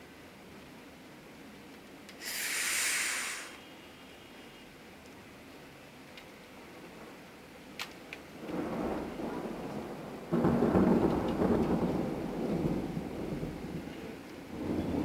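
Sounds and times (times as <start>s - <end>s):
steady rain: 0.0s - 15.0s
thunder rumbling: 8.3s - 15.0s
loud thunder clap: 8.4s - 13.9s, 14.5s - 15.0s.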